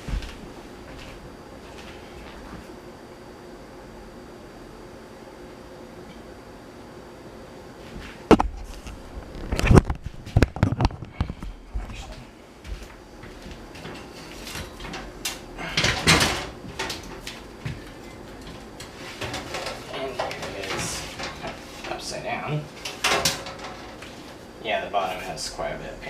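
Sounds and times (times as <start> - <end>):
fan being knocked and clunked: 8.3 - 24.4.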